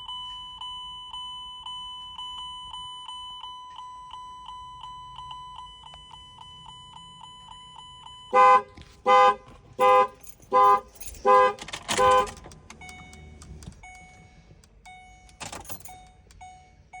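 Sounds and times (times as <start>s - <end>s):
car horn honking: 8.2s - 13.3s.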